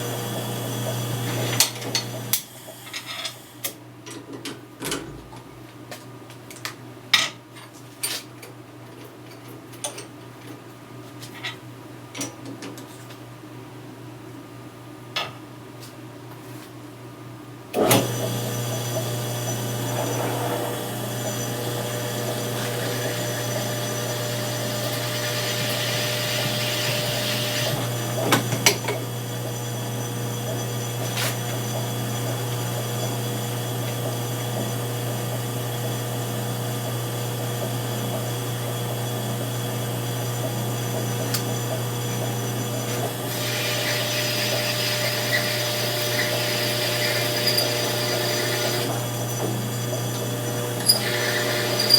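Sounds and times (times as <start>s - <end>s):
power tool motor humming: 17.9s - 36.6s, 40.2s - 51.9s.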